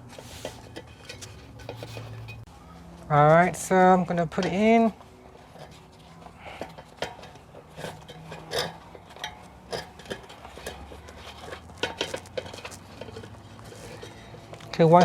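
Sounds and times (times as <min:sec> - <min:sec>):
rubber rubbing: 0:00.0 - 0:02.5.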